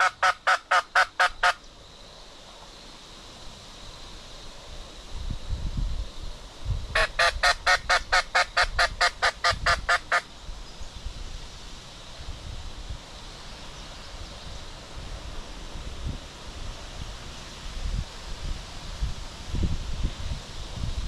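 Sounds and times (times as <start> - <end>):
turkey yelping: 0.0 - 1.6, 7.0 - 10.3
wind rumble on microphone: 4.3 - 21.0.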